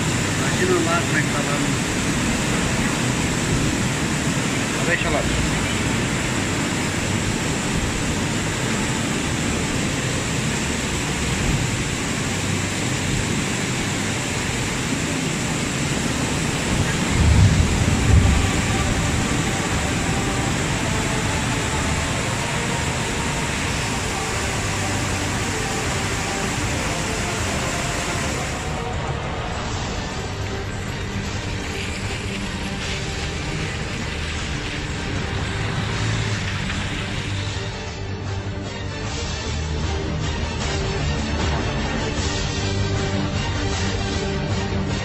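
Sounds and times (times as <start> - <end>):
heavy rain pouring: 0.0 - 45.0
wind gust rumble: 13.2 - 24.3.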